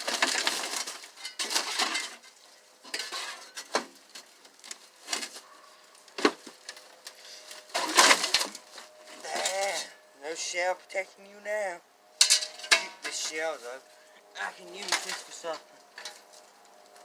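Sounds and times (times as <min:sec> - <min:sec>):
sheet metal clattering and scraping: 0:00.0 - 0:04.4, 0:06.2 - 0:10.0, 0:12.2 - 0:13.6, 0:14.7 - 0:16.4.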